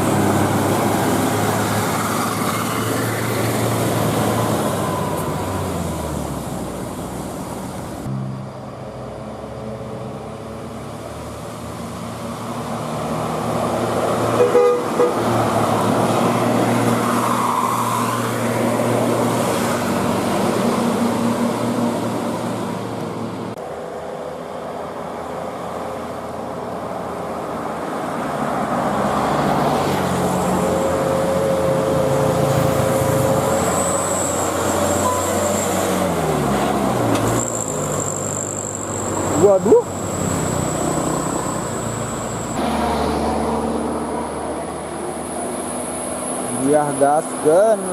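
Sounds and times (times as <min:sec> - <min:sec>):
bus engine: 0:00.0 - 0:47.9
traffic noise: 0:00.0 - 0:47.9
bus musical horn: 0:14.3 - 0:15.4.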